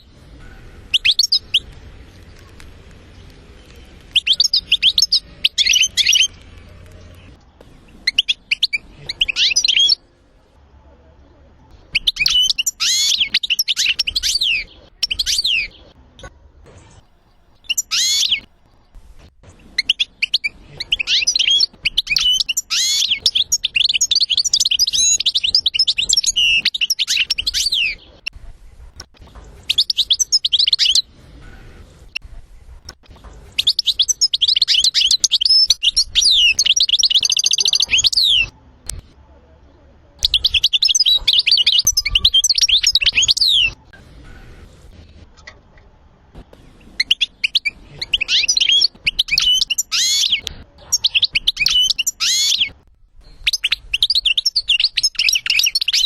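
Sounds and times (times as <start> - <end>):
goldfinch twittering song: 17.6 - 19.0, 19.6 - 28.3, 47.0 - 56.0.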